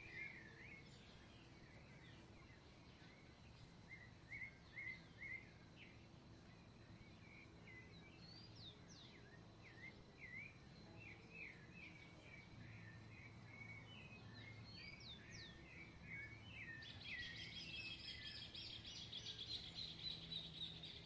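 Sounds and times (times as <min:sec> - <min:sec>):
faint low hum: 0:00.0 - 0:21.0
songbirds singing: 0:00.0 - 0:21.0.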